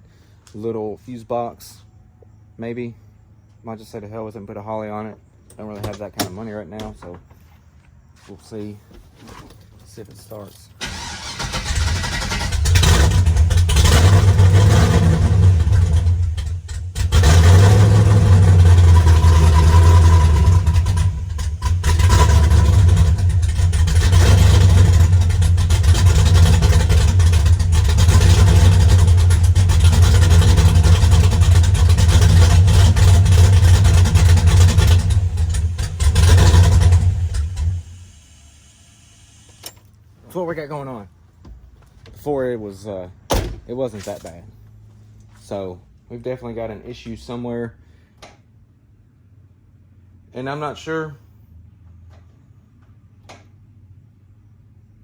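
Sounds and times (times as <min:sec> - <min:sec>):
misfiring car engine running: 0:10.8 - 0:38.6.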